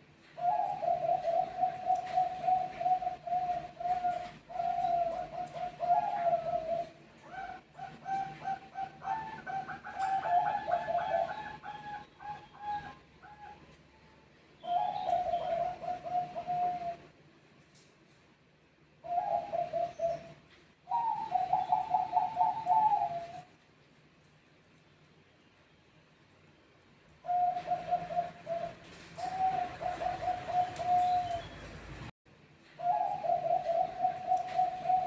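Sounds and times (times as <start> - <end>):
doves cooing: 0.4 - 13.8, 14.6 - 17.2, 19.0 - 23.6, 27.2 - 32.1, 32.8 - 35.0.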